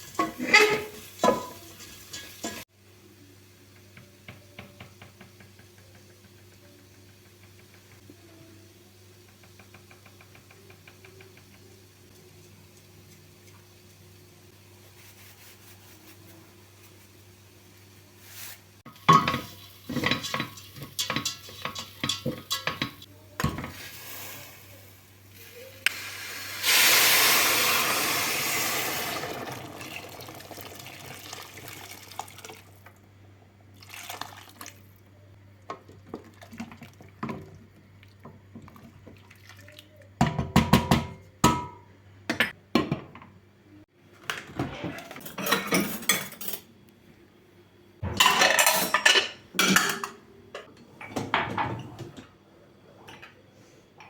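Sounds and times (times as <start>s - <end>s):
dishes and utensils clinking: 0.0s - 2.7s, 18.9s - 23.8s, 44.8s - 46.7s, 48.0s - 52.2s.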